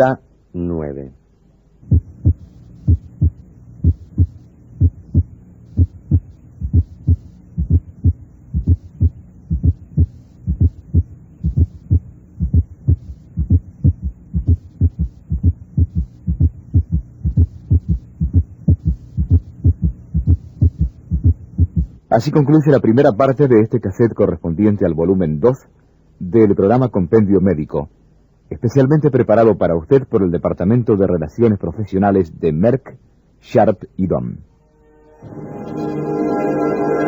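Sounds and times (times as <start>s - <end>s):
low steady hum: 0.0s - 37.0s
heart sounds gallop rhythm: 1.8s - 22.0s.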